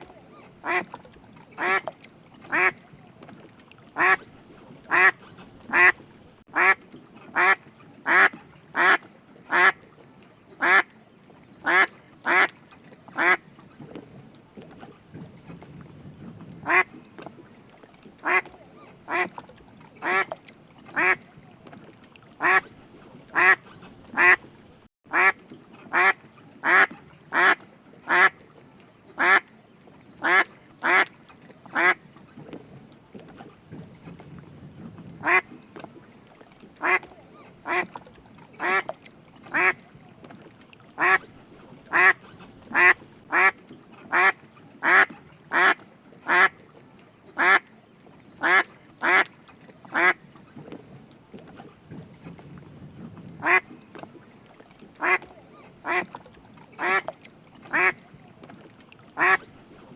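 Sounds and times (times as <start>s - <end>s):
duck quacking: 0.6s - 0.8s, 1.6s - 1.8s, 2.5s - 2.8s, 4.0s - 4.2s, 4.9s - 9.8s, 10.6s - 10.9s, 11.6s - 12.5s, 13.2s - 13.4s, 16.6s - 16.9s, 18.2s - 18.5s, 19.1s - 19.3s, 20.0s - 20.3s, 21.0s - 21.2s, 22.4s - 22.6s, 23.3s - 24.4s, 25.1s - 28.3s, 29.2s - 29.4s, 30.2s - 31.1s, 31.8s - 32.0s, 35.2s - 35.5s, 36.8s - 37.9s, 41.0s - 41.2s, 41.9s - 46.5s, 53.4s - 53.6s, 55.0s - 55.2s, 59.2s - 59.4s.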